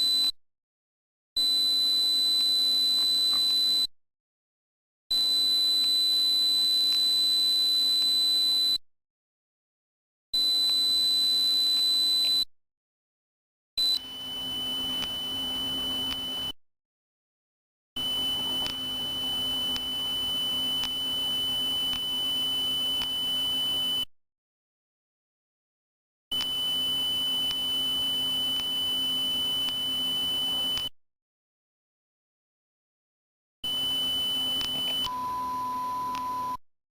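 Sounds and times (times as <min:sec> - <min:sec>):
high-pitched sine tones: 0:01.4 - 0:03.9, 0:13.8 - 0:16.6, 0:18.0 - 0:24.1, 0:26.4 - 0:30.9, 0:33.7 - 0:36.6.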